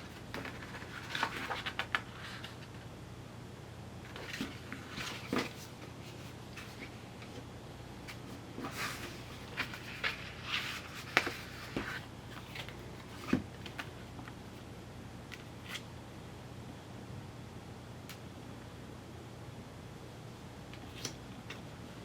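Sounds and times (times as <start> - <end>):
paper rustling: 0.1 - 2.7, 8.1 - 13.9.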